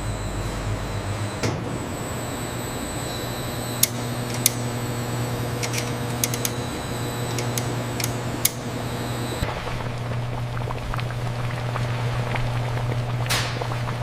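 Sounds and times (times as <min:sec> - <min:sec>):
faint high whine: 0:00.0 - 0:09.6
factory machinery humming: 0:00.0 - 0:11.9
sharp metallic clicks: 0:03.8 - 0:04.6, 0:05.6 - 0:06.6, 0:07.3 - 0:08.6.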